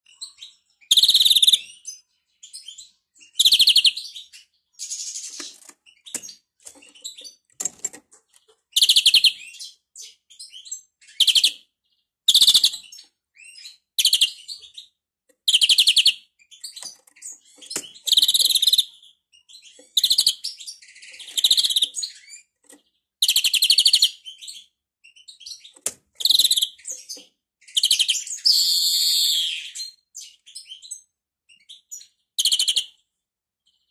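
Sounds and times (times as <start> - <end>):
greenfinch singing rattling trills: 15.5 - 28.7.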